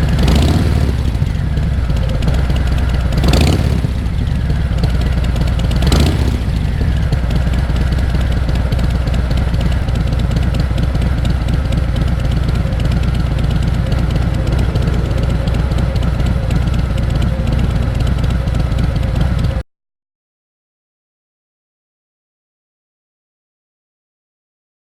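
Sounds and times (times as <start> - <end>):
motorcycle engine idling: 0.0 - 19.6.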